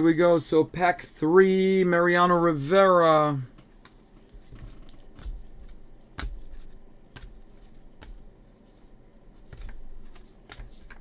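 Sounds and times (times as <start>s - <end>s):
trading cards flipped by hand: 3.6s - 8.3s, 9.2s - 11.0s.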